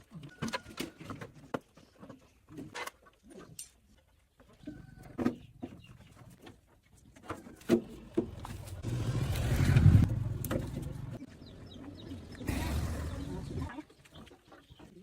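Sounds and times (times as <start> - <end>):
vehicle engine rumbling: 7.9 - 13.7.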